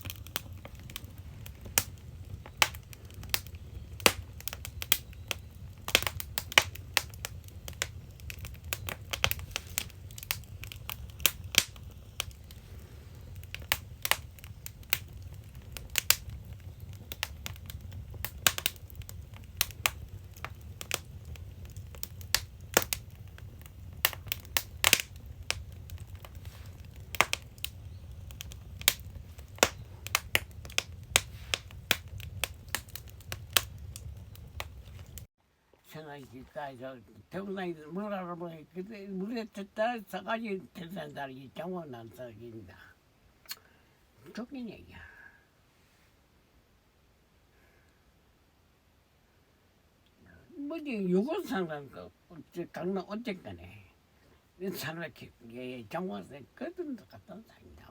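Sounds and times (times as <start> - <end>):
firewood crackling and popping: 0.0 - 35.3, 50.5 - 57.9.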